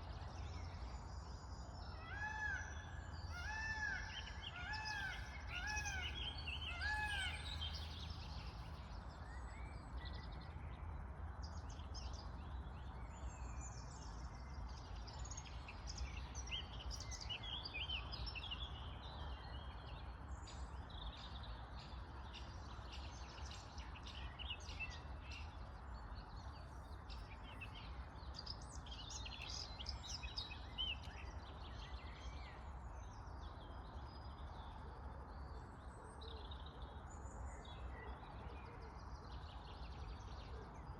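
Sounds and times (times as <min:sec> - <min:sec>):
wild birds chirping: 0:00.7 - 0:09.0.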